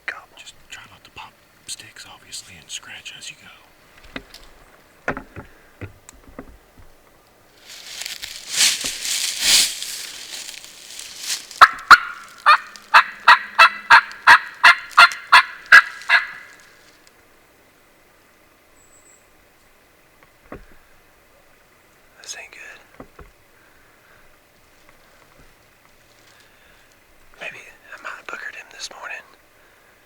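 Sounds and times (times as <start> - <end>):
leaves rustling: 0.7 - 17.4, 23.4 - 30.0
turkey call hen yelps: 11.6 - 16.6.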